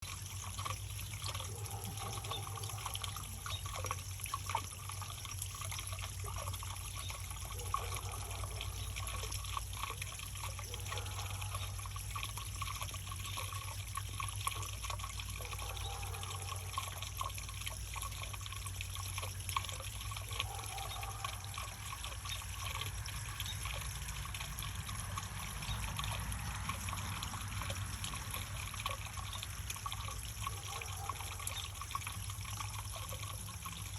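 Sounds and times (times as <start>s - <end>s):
constant low hum: 0.0s - 33.9s
water trickling down rain chain: 0.0s - 33.9s.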